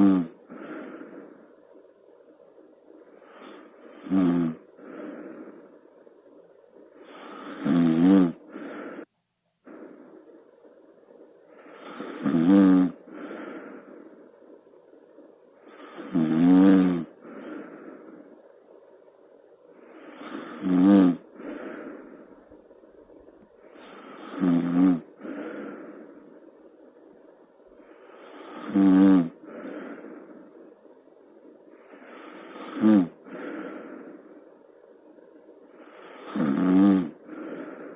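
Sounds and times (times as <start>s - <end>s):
person snoring: 0.0s - 1.2s, 3.2s - 5.6s, 7.0s - 10.0s, 11.6s - 13.9s, 15.6s - 18.1s, 19.8s - 22.1s, 23.7s - 26.1s, 27.8s - 30.3s, 31.8s - 34.2s, 35.8s - 37.9s
soft breath: 0.0s - 7.7s, 8.4s - 12.3s, 13.0s - 16.2s, 17.0s - 20.6s, 21.2s - 37.9s.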